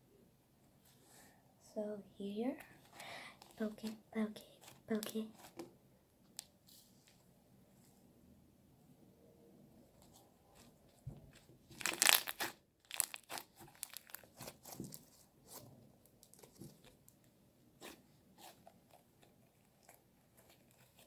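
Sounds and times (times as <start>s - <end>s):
slime crackling and popping: 11.7s - 15.1s.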